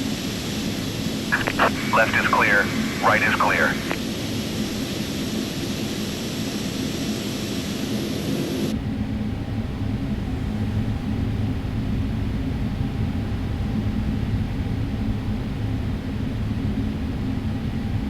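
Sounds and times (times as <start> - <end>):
jet engines idling: 1.4 - 4.0.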